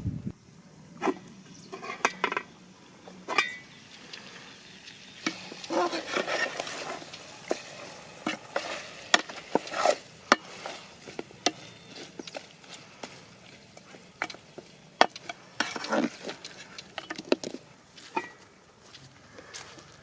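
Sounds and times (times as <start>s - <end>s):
food sizzling: 3.2s - 17.9s
spoon scraping frying pan: 4.9s - 18.4s.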